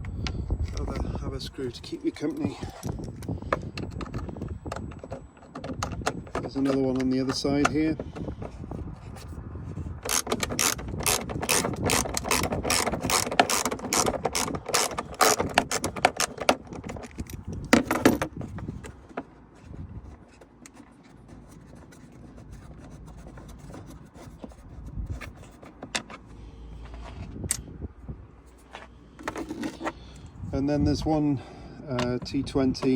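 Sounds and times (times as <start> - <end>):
ratchet clicking quickly: 10.1 - 16.4.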